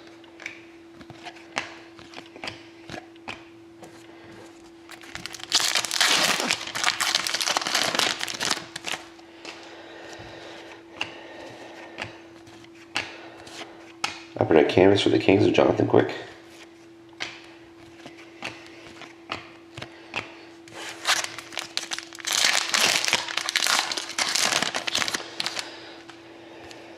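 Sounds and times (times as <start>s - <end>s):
wrapper tearing and crinkling: 4.9s - 9.1s, 20.9s - 25.7s.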